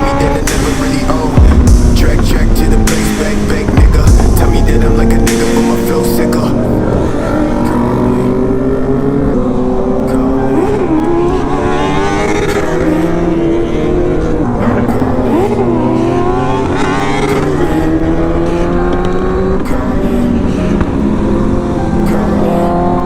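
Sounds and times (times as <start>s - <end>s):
motorcycle engine running: 0.0s - 9.2s.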